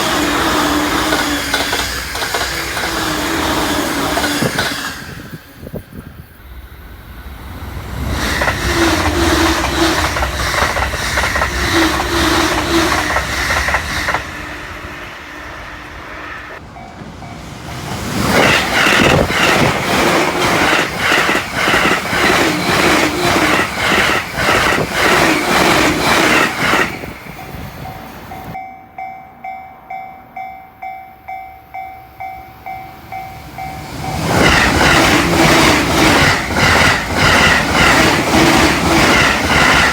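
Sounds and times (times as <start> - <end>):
rail-joint clicks: 0.0 - 6.2, 7.2 - 14.8, 15.8 - 39.9
express train passing: 0.0 - 39.9
level-crossing warning bell: 14.5 - 17.7, 25.2 - 39.9.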